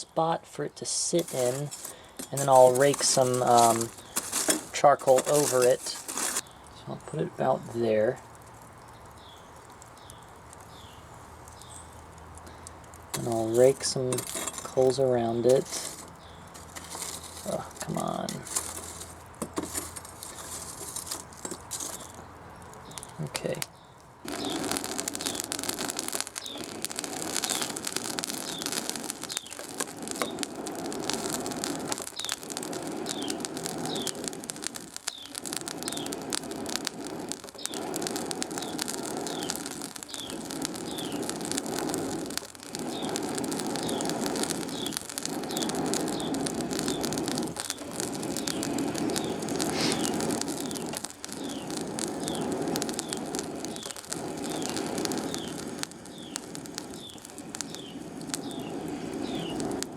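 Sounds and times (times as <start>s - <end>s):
coals crackling: 0.0s - 59.9s
forge forced air rushing: 35.6s - 59.9s.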